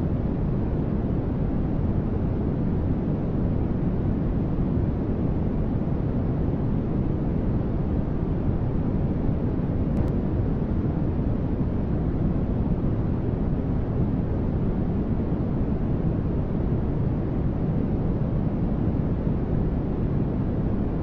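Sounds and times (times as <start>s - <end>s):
steady low static hiss: 0.0s - 21.0s.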